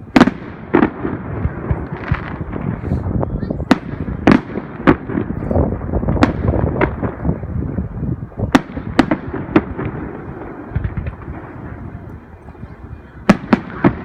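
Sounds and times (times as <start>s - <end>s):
fireworks bangs: 0.0s - 14.0s
low rumble of explosions: 0.0s - 14.0s
small firework pops: 10.7s - 11.5s.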